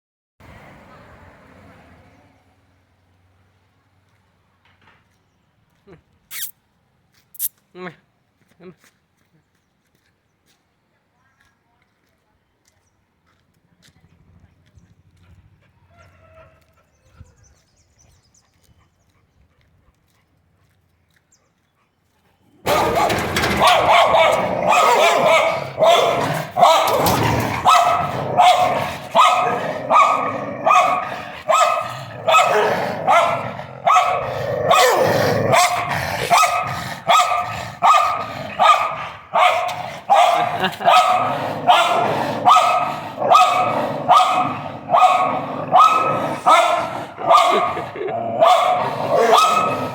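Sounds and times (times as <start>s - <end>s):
dog barking: 22.6s - 49.9s.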